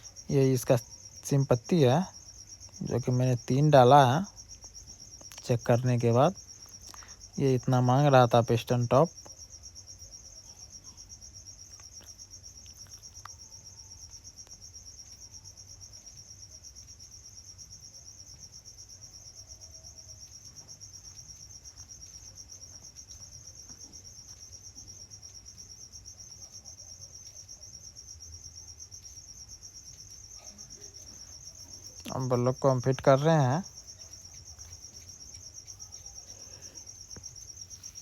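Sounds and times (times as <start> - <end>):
crickets chirping: 0.0 - 38.0.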